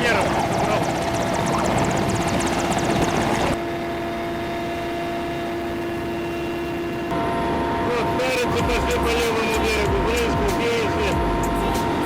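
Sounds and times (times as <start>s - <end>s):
engine running: 0.0s - 3.6s.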